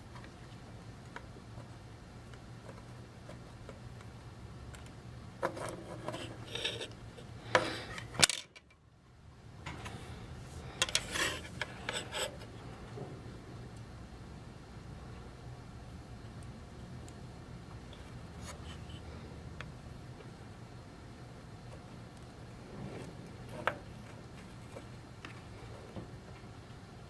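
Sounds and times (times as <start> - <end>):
low steady hum: 0.0 - 27.0
metal tools scraping and clicking: 5.5 - 7.0.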